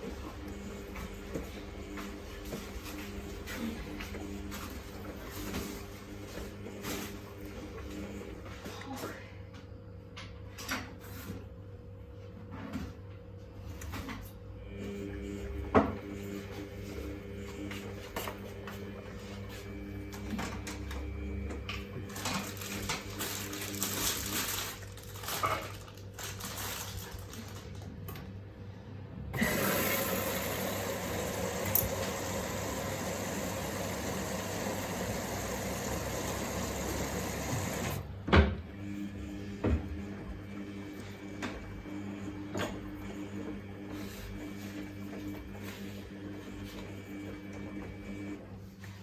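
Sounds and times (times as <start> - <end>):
washing machine motor hum: 0.0 - 49.0
water rushing into washing machine: 29.4 - 38.2
knocks in washing machine: 37.6 - 38.7.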